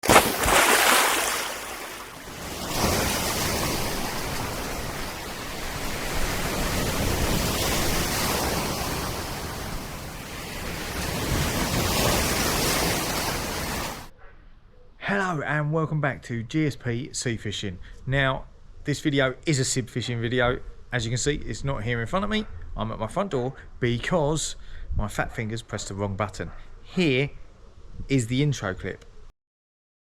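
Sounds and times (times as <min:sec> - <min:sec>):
sea water rushing: 0:00.0 - 0:14.1
wind: 0:00.0 - 0:29.3.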